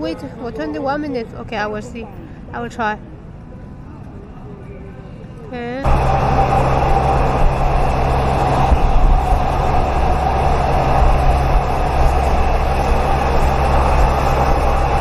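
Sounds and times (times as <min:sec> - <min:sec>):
vehicle running rumble: 0:05.8 - 0:15.0.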